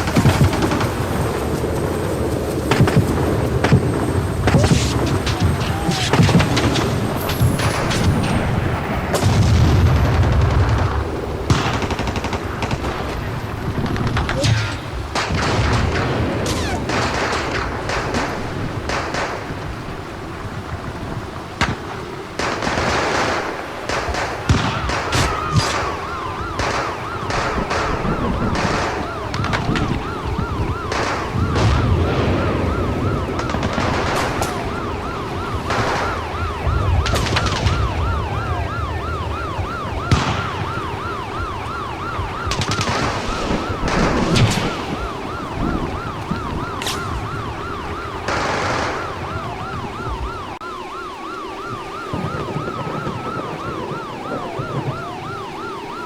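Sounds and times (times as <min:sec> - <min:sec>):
wailing siren: 0:00.0 - 0:56.0
yelping siren: 0:00.0 - 0:56.0
gunshots and gunfire: 0:04.4 - 0:20.0, 0:21.6 - 0:38.5, 0:40.0 - 0:49.7.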